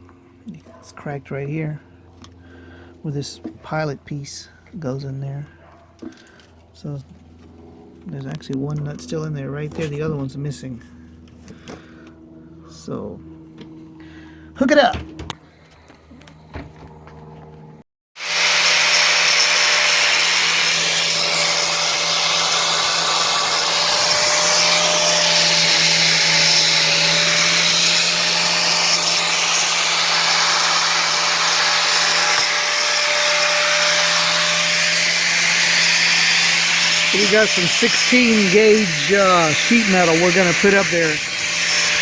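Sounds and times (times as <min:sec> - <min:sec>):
electric grinder grinding metal: 0:18.2 - 0:42.0.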